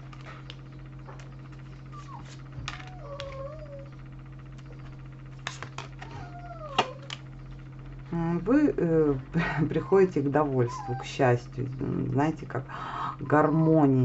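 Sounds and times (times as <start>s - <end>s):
cat meowing: 2.8s - 3.9s.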